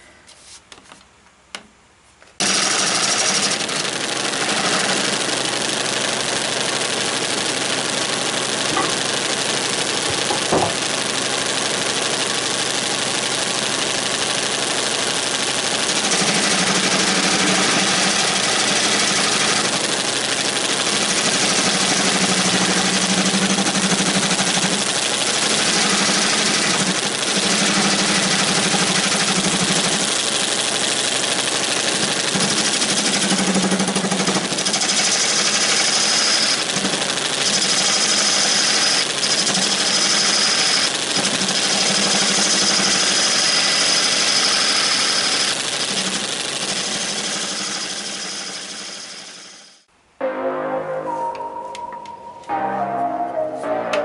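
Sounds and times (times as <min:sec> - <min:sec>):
deeper drone: 0:50.2 - 0:54.0.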